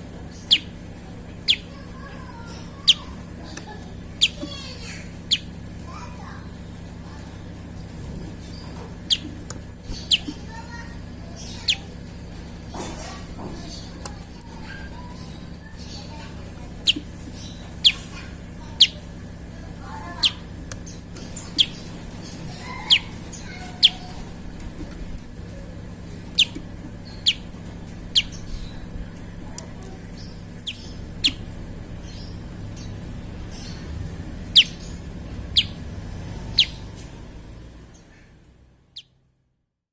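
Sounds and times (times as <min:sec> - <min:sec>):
steady low hum: 0:00.0 - 0:39.6
bird giving sharp high calls: 0:00.3 - 0:00.8, 0:04.1 - 0:05.5, 0:14.6 - 0:19.0, 0:21.4 - 0:24.3, 0:36.4 - 0:36.9.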